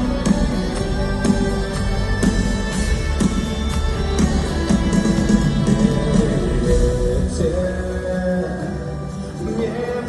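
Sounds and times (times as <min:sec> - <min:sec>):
live pop ballad instrumental: 0:00.0 - 0:10.0.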